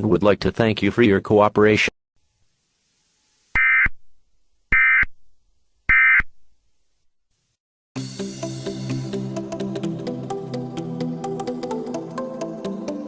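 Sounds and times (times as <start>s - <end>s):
music: 8.0s - 13.0s.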